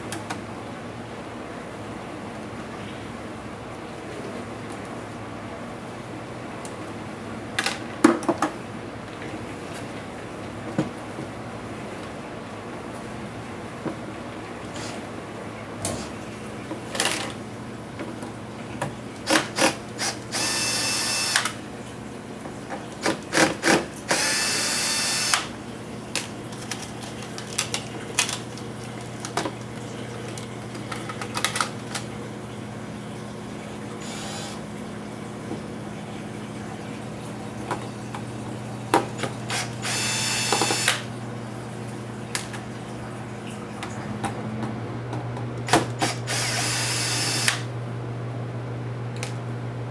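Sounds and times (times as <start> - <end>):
power screwdriver running: 19.3 - 21.6, 23.3 - 25.5, 34.0 - 34.6, 39.5 - 41.1, 45.7 - 47.7.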